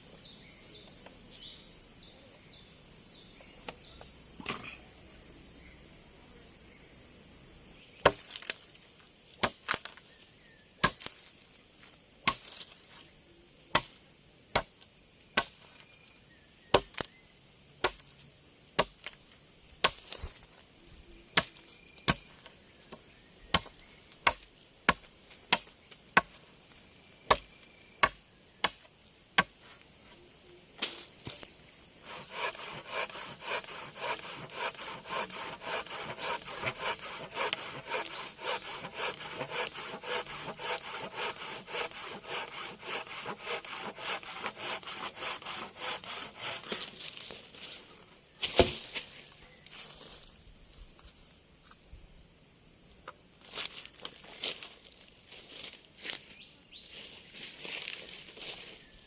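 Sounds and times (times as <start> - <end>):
high insect drone: 0.0 - 59.0
chopping blows on wood: 13.7 - 14.7, 16.7 - 17.1, 18.8 - 19.2, 21.4 - 22.3, 22.9 - 26.4, 27.3 - 29.5, 48.4 - 49.0
hand saw sawing wood: 32.0 - 47.0.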